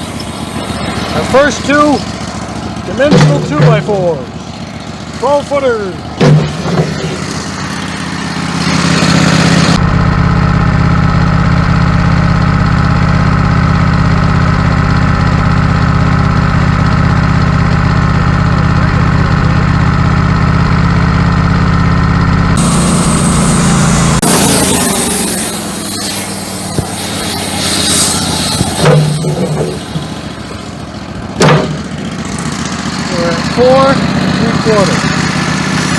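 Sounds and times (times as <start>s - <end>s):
hissing noise: 0.0s - 2.1s, 22.6s - 30.8s
sawmill engine running: 0.0s - 35.9s.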